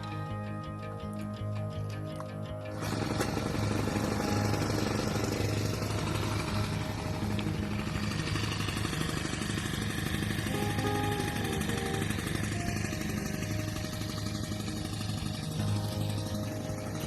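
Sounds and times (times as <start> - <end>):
lawn mower engine running: 2.7 - 17.0.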